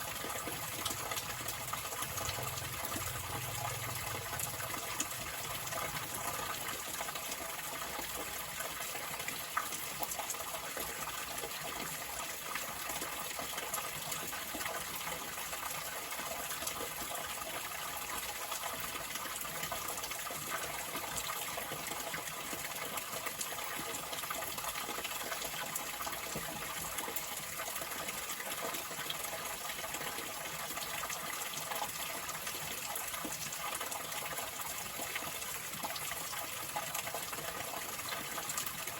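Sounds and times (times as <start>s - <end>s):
water flowing: 0.0s - 10.0s, 20.8s - 38.9s.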